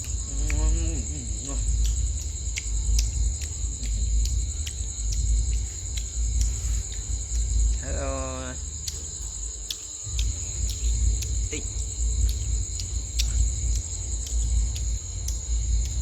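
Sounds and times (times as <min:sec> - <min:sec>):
crickets chirping: 0:00.0 - 0:16.0
pulsing low rumble: 0:00.0 - 0:16.0.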